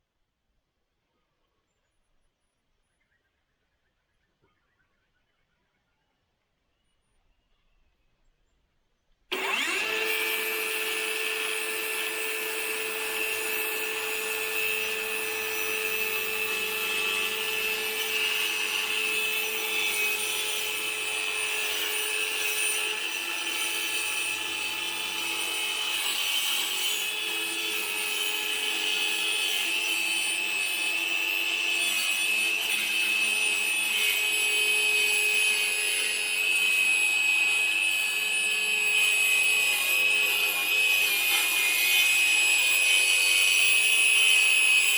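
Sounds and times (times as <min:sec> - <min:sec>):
circular saw cutting plywood: 0:09.3 - 0:44.9.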